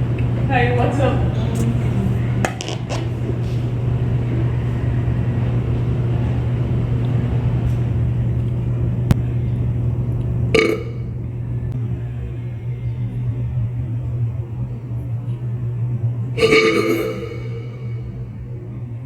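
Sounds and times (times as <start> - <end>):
steady low hum: 0.0 - 19.0
short burp: 10.6 - 11.0, 16.4 - 18.2.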